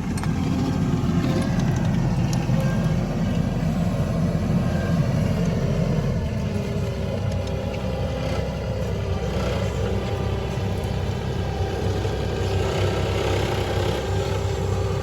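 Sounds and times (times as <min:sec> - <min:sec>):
vehicle engine humming: 0:00.0 - 0:15.0.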